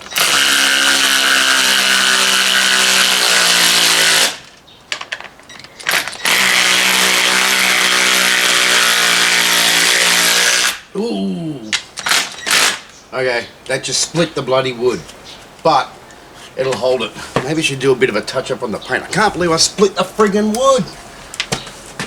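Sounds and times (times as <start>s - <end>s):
cordless drill driving bolt: 0.0s - 4.6s, 5.5s - 10.8s, 12.0s - 12.9s.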